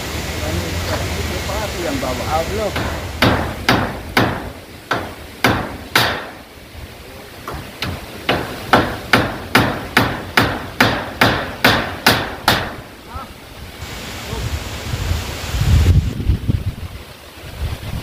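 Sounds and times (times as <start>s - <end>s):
hammer striking metal sheets: 2.6s - 6.4s, 7.4s - 12.9s.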